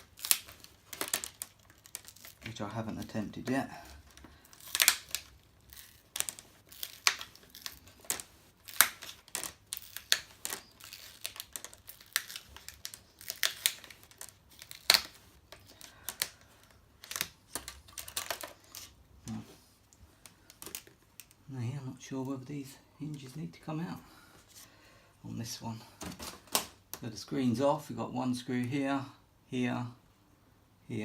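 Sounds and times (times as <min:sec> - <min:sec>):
plastic clips clicking and snapping: 0:00.0 - 0:03.1, 0:04.0 - 0:18.9.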